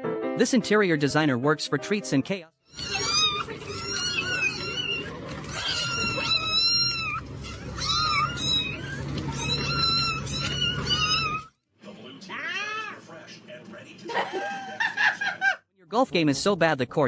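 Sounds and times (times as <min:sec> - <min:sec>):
cat meowing: 0:02.7 - 0:11.5, 0:12.3 - 0:13.0.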